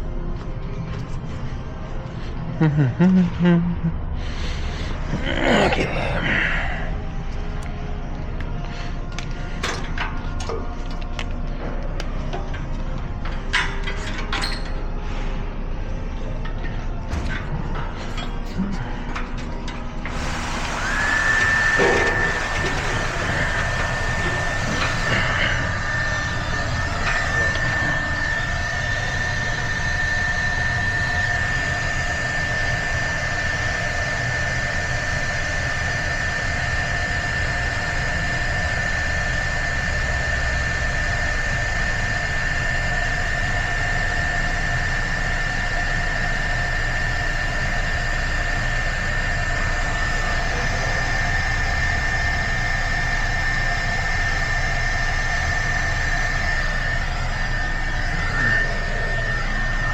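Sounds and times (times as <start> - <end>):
heat gun whining: 20.0 - 59.9.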